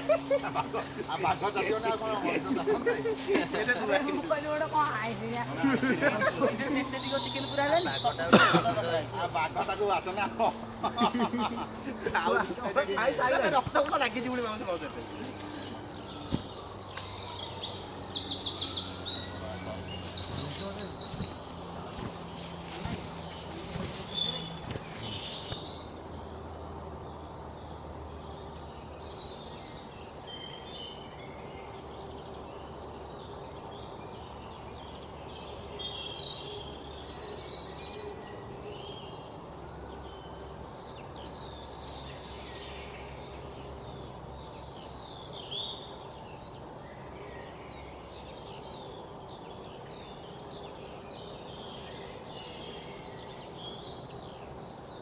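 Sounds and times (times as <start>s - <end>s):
bird call of rapid pulses: 0.0s - 25.6s
small birds chirping: 0.0s - 31.2s.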